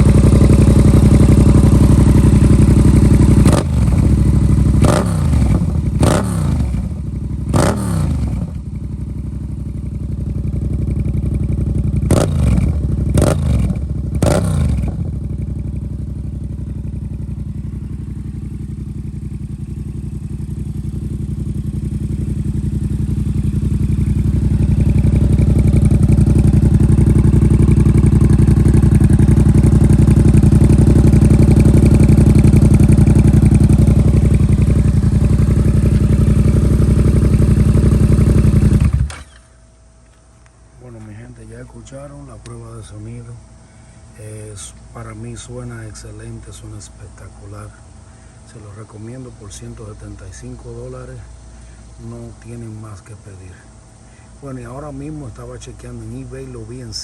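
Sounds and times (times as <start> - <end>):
motorcycle engine throttle blips: 0.0 - 41.2.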